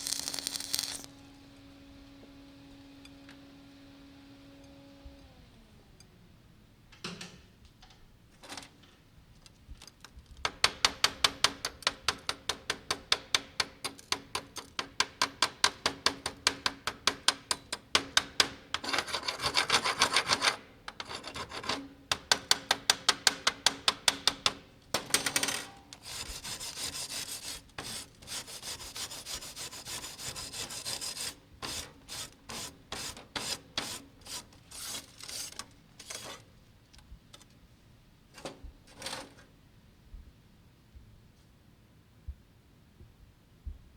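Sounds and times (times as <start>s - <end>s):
rapid rasping rubbing strokes: 0.0s - 1.1s.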